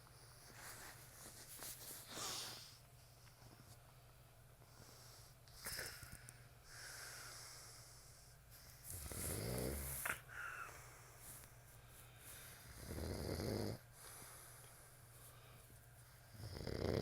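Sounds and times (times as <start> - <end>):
faint wheezy snoring: 6.7 - 11.1, 12.5 - 14.6, 16.3 - 17.0.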